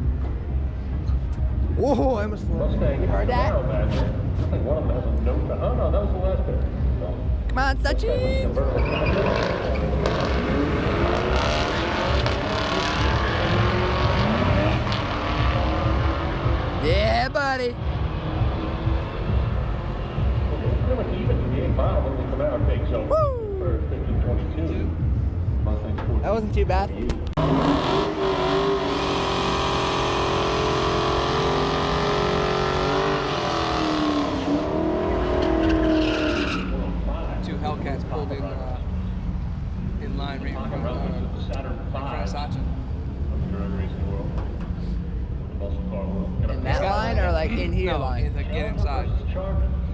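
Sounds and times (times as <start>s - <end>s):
cars accelerating hard: 8.5s - 23.0s, 27.4s - 42.0s.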